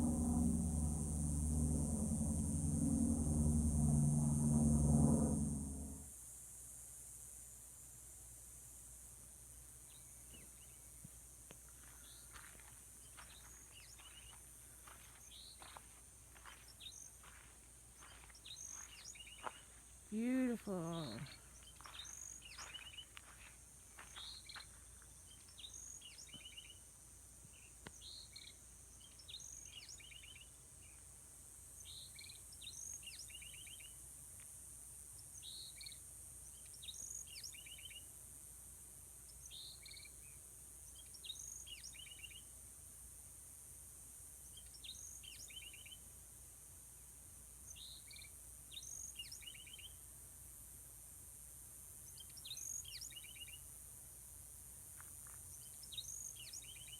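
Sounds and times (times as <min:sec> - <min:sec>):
steady high hiss: 0:00.0 - 0:06.1.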